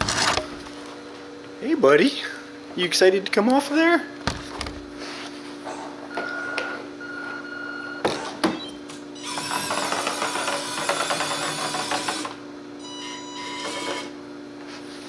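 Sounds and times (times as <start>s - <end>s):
steady electric hum: 0.0s - 15.0s
small electric motor whirring: 9.2s - 12.4s, 13.4s - 14.1s.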